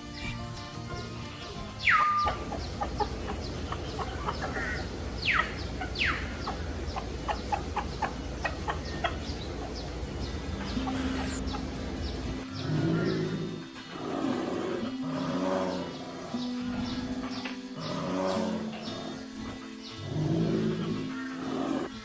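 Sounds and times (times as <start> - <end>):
chickens clucking: 1.8 - 14.6, 15.7 - 22.0
sharp falling chicken calls: 1.9 - 12.4.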